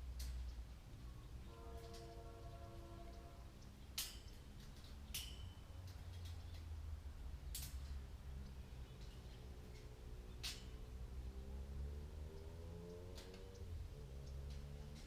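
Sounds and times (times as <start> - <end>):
sharp clicks: 7.5 - 10.9.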